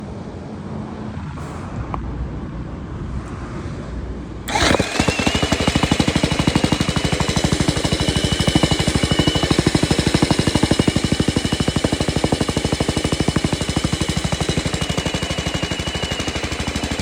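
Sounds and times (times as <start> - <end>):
low rumble: 0.0 - 5.8
tamping rammer motor whine: 4.4 - 17.0.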